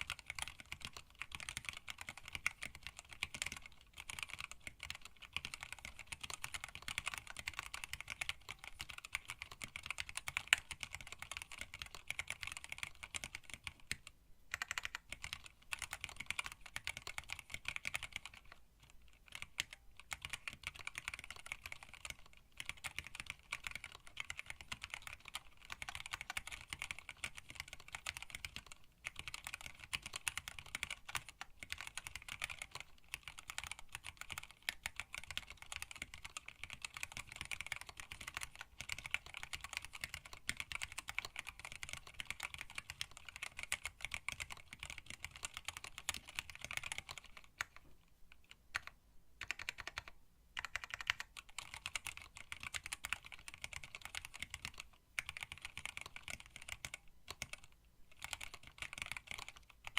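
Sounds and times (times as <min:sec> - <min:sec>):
fast typing on mechanical keyboard: 0:00.0 - 0:47.8, 0:48.4 - 0:59.9.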